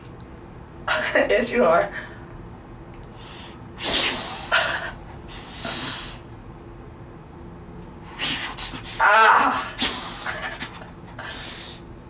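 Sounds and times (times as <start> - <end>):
stifled laughter snorts: 9.8 - 11.7.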